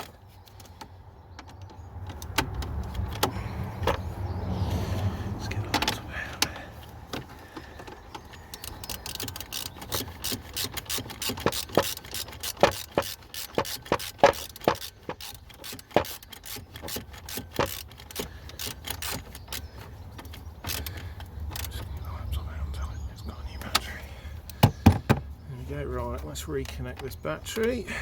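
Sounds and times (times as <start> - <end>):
hand tools knocking on engine parts: 0.0 - 4.2, 4.8 - 22.2, 23.6 - 25.5
ratchet clicking: 8.2 - 21.8.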